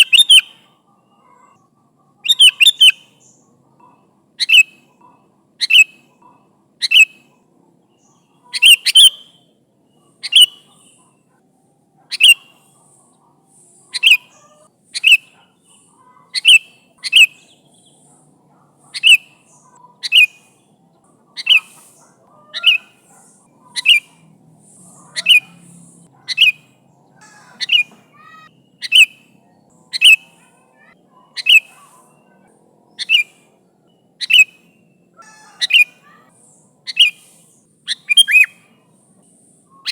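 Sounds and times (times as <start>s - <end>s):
bird sharp call notes: 0.0s - 0.6s, 8.4s - 9.5s, 12.1s - 12.5s, 27.2s - 29.2s, 36.9s - 38.6s.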